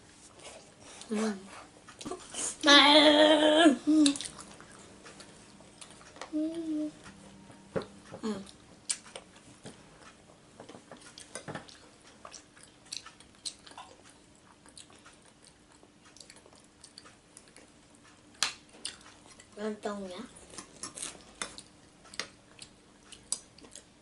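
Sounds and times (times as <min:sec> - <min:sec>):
person chewing crunchy food: 0:08.4 - 0:19.6, 0:20.3 - 0:24.0.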